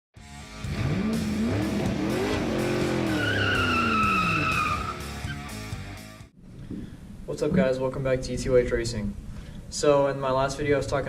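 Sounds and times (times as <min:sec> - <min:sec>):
car engine revving: 0:00.4 - 0:05.8
high tire squeal: 0:01.6 - 0:05.7.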